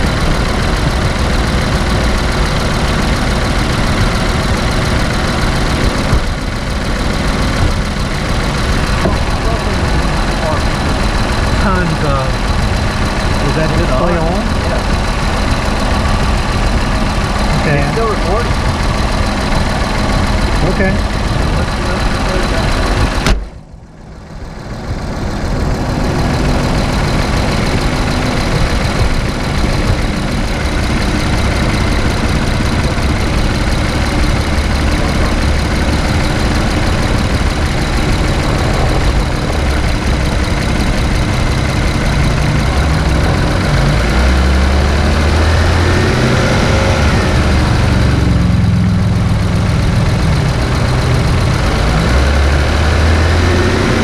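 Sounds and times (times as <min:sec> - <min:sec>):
car engine and road noise: 0:00.0 - 0:54.0
sharp thump: 0:23.0 - 0:23.6.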